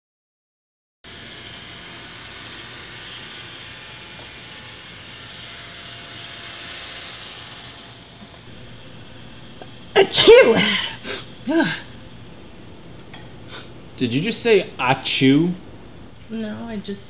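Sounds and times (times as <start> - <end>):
low hum: 1.3 - 17.0
hiss: 10.9 - 11.3, 13.5 - 13.8.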